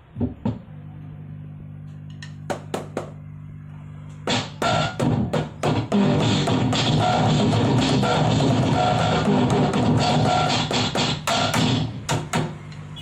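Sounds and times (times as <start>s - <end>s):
steady low hum: 0.0s - 13.0s
electronic drum hits: 4.3s - 12.6s
fast drum-kit pattern: 4.3s - 13.0s.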